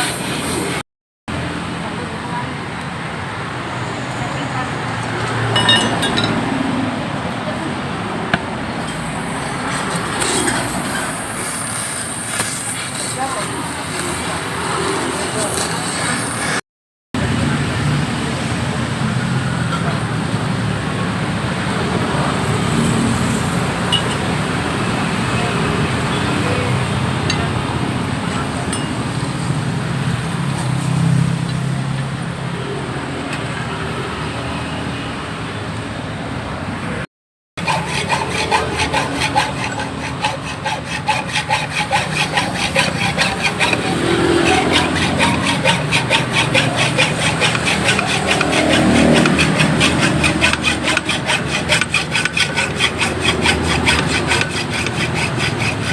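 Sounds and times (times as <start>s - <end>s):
road traffic noise: 0.0s - 16.6s, 17.2s - 55.9s
hand saw rasping on metal: 5.6s - 6.4s, 8.3s - 16.6s, 37.6s - 55.9s.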